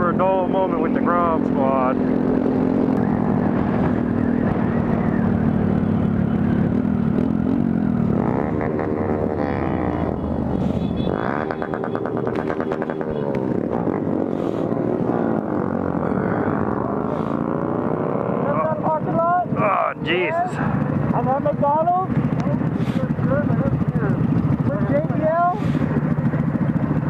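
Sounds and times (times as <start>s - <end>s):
motorcycle engine revving: 0.0s - 27.0s.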